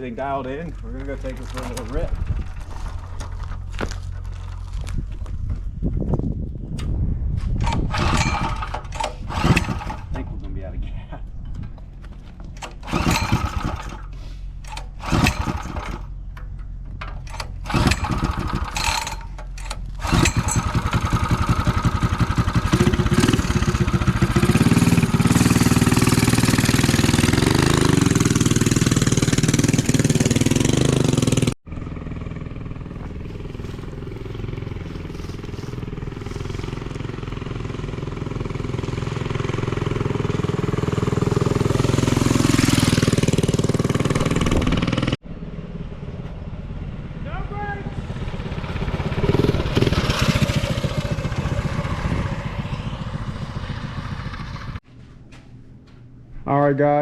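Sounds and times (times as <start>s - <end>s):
engine cranking: 0.7s - 4.8s, 7.6s - 10.4s, 11.5s - 31.6s, 48.1s - 54.8s
engine revving and running: 7.6s - 10.2s, 12.6s - 16.1s, 17.2s - 46.0s, 48.0s - 54.8s.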